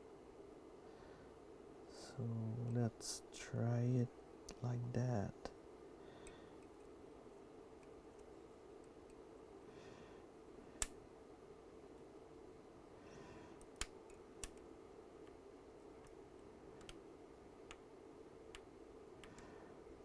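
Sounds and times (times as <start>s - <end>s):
faint steady hum: 0.0s - 20.0s
soldering tweezers clicking: 13.6s - 14.7s.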